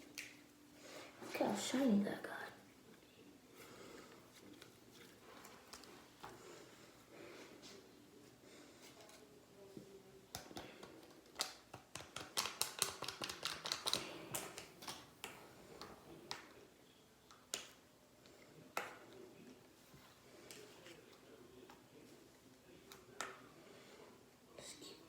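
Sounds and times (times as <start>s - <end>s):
slime squishing with wet pops: 10.4s - 16.6s.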